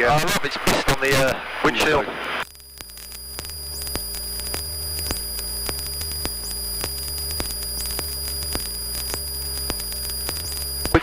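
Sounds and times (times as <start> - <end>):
high-pitched electrical whine: 0.0 - 11.0
sharp clicks: 2.4 - 11.0.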